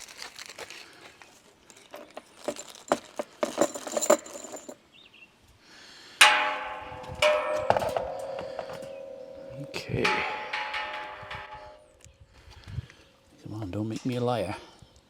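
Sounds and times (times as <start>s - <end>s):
metal pieces clinking: 1.7s - 4.8s
ringing metallic clang: 6.2s - 12.0s.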